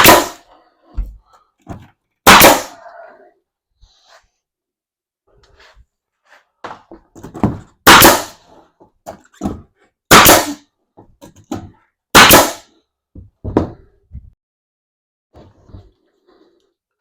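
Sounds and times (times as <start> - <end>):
nail gun firing into wood: 0.0 - 0.4, 2.3 - 2.7, 7.8 - 8.4, 10.1 - 10.6, 12.2 - 12.7
knocks of board being handled: 6.6 - 7.8, 13.2 - 14.4.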